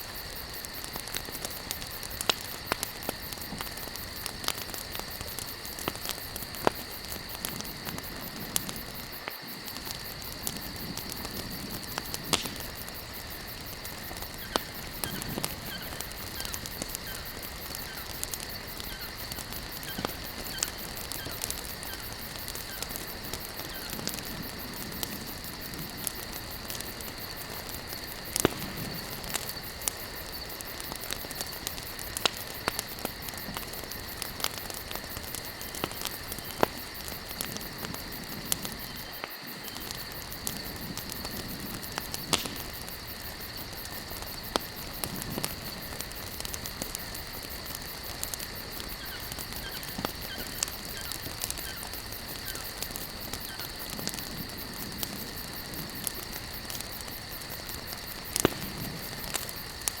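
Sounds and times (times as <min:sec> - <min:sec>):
campfire crackling: 0:00.0 - 1:00.0.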